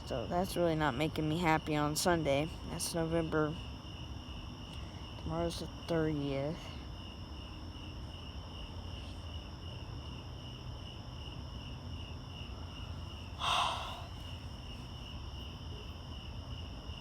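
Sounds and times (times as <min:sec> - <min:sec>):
crickets chirping: 0:00.0 - 0:17.0
breathy puff: 0:13.4 - 0:14.3.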